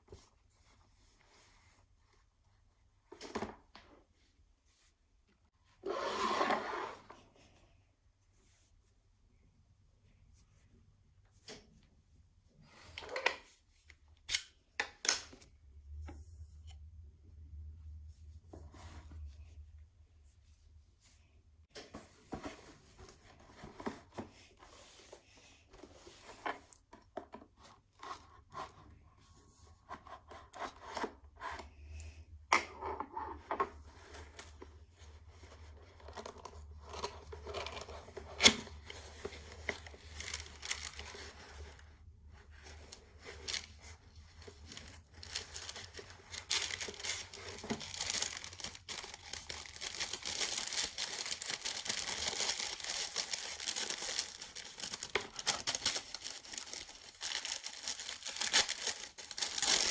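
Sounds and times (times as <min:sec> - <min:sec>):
cardboard and plastic tearing: 0:36.9 - 0:41.8, 0:42.8 - 0:59.9.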